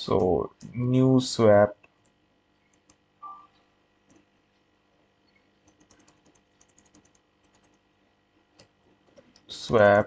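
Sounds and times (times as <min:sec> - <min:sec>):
faint keyboard typing: 0:01.8 - 0:07.9, 0:08.5 - 0:09.5.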